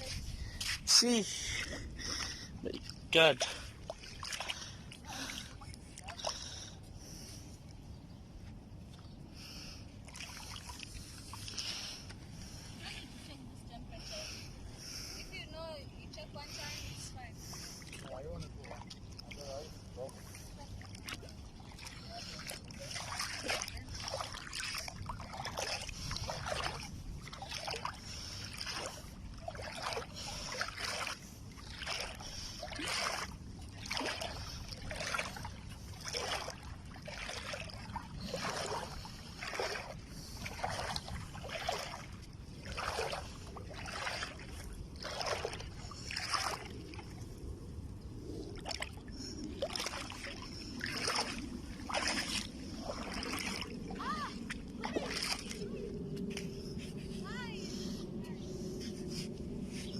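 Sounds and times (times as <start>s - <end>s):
wind rumble on microphone: 0.0s - 0.9s, 19.8s - 59.9s.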